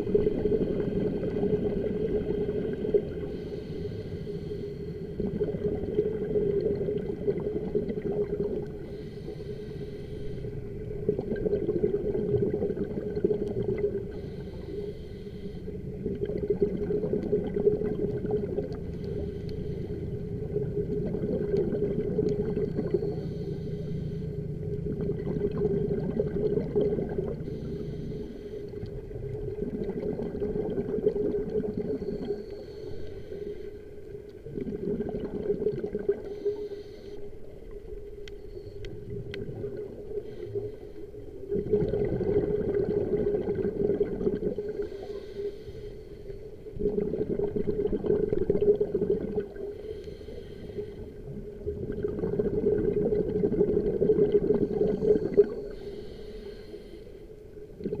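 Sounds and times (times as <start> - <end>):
exhaled bubbles rushing: 0.0 - 3.2, 5.2 - 8.8, 10.8 - 14.1, 16.0 - 18.8, 20.4 - 23.0, 24.8 - 27.4, 29.0 - 32.3, 34.4 - 36.3, 39.0 - 40.2, 41.5 - 44.8, 46.7 - 49.7, 51.4 - 55.6, 57.8 - 58.0
steady low hum: 0.0 - 58.0
faint clicks: 16.1 - 20.0, 21.0 - 25.6, 28.6 - 30.4, 31.0 - 41.0, 49.3 - 50.9.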